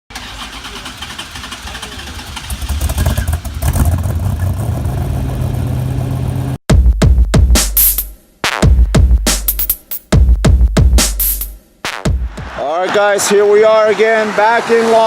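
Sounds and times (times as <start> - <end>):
car engine running: 0.1 - 6.6.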